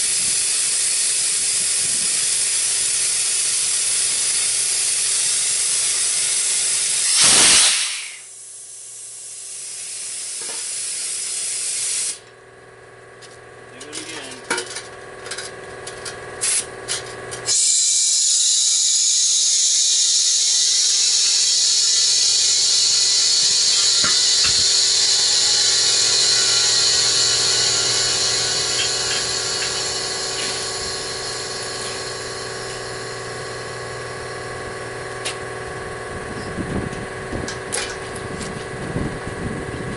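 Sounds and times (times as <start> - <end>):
air hissing into tire: 0.0 - 12.2, 16.4 - 16.7, 17.4 - 34.5
loud air blast: 1.2 - 12.2, 17.4 - 35.0.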